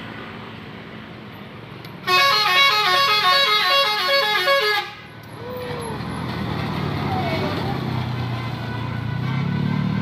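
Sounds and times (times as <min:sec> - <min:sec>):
engine and road noise: 0:00.0 - 0:10.0
bus horn playing melodic tune: 0:02.0 - 0:05.1.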